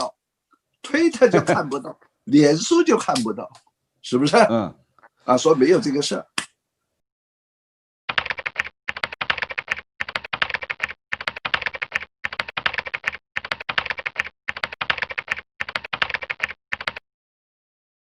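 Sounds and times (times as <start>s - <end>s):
rapid typing clicks: 8.1s - 17.0s.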